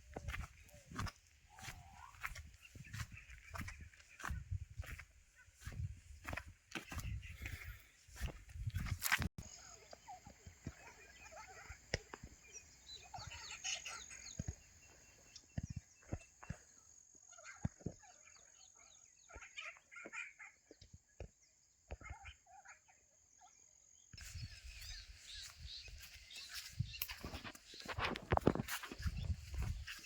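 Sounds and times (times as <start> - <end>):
chickens clucking: 0.1 - 8.9.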